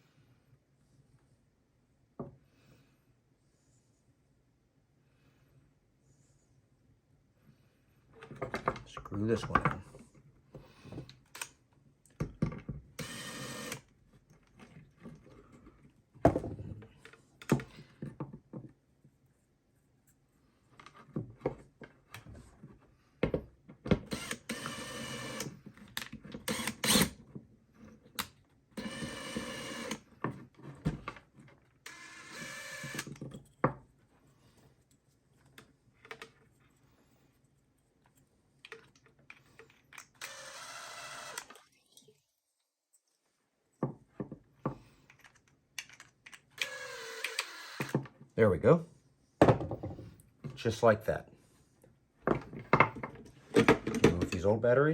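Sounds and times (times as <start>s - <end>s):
screwdriver scraping: 26.4s - 27.2s, 28.8s - 30.0s, 31.9s - 33.2s.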